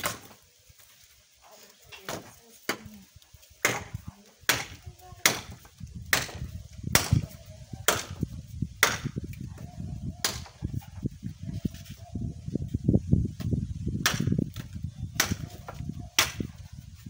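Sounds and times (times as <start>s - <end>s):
axe chopping wood: 0.0s - 0.4s, 2.0s - 2.9s, 3.6s - 9.5s, 10.2s - 10.6s, 14.0s - 16.5s.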